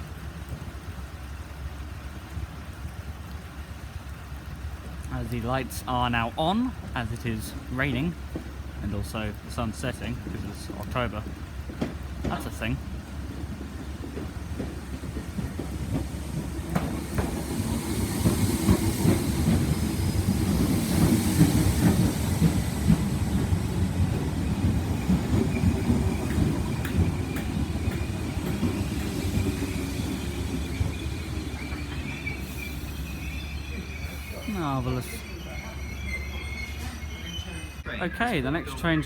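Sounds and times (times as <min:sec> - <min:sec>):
wheels clicking over rail joints: 0:00.0 - 0:37.8
low train rumble: 0:00.0 - 0:39.0
thin high steady tone: 0:29.3 - 0:39.0.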